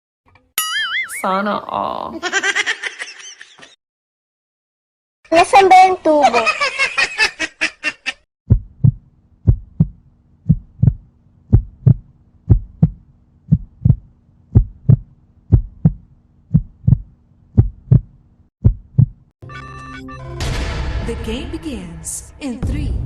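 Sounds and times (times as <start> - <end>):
heartbeat thumps: 8.5 - 19.3.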